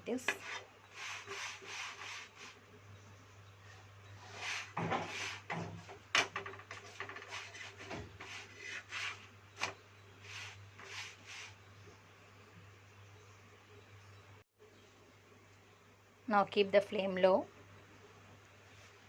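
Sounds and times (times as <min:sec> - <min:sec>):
rolling pin rubbing on dough: 0:00.2 - 0:02.6, 0:04.2 - 0:05.9, 0:06.7 - 0:09.3, 0:10.2 - 0:11.6.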